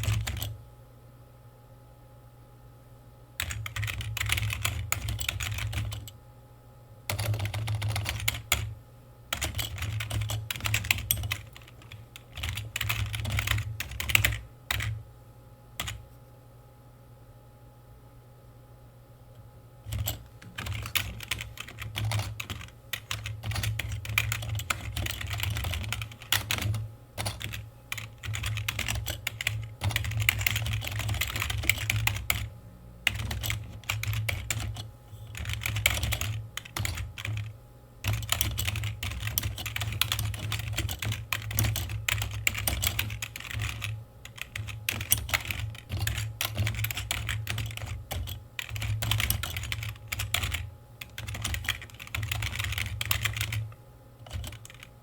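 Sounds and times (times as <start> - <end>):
fast typing on keyboard: 0.0 - 0.6, 3.4 - 6.1, 7.1 - 8.7, 9.3 - 15.0, 15.8 - 16.0, 19.9 - 55.0.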